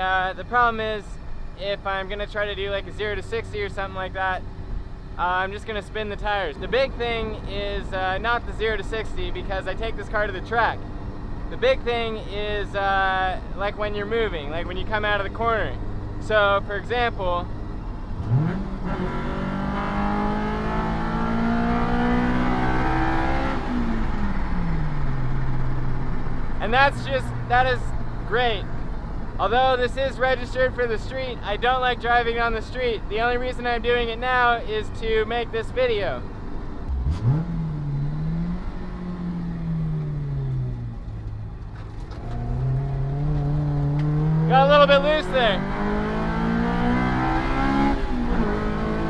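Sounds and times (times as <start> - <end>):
car engine accelerating: 0.0 - 34.5, 35.3 - 49.0
car engine revving from inside: 18.2 - 25.1, 36.9 - 40.9, 42.2 - 49.0.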